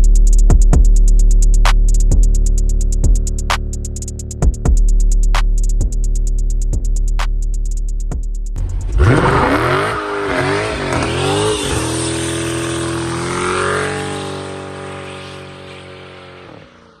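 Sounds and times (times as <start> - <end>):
car engine revving: 8.6 - 17.0.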